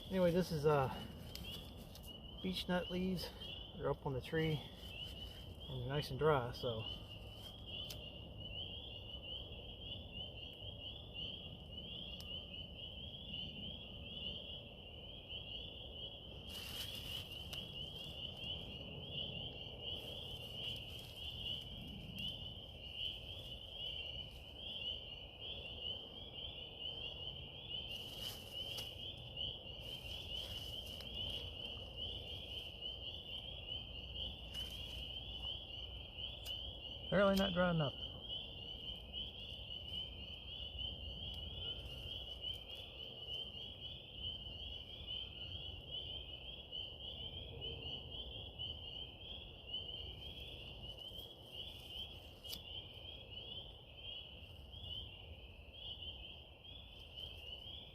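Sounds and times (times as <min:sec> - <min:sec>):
dry leaves rustling: 0:00.0 - 0:08.1, 0:16.3 - 0:25.1, 0:27.8 - 0:36.1, 0:37.2 - 0:45.5, 0:50.1 - 0:53.0.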